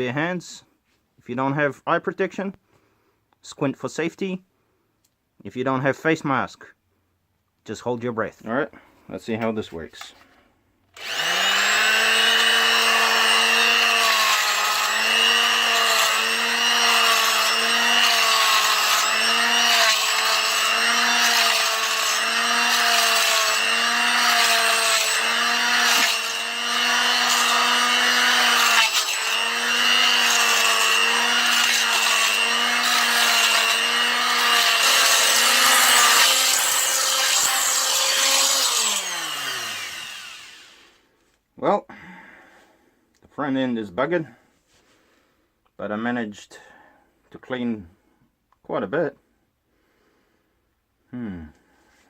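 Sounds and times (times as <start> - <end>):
oscillating multi-tool scraping concrete: 11.0 - 40.8.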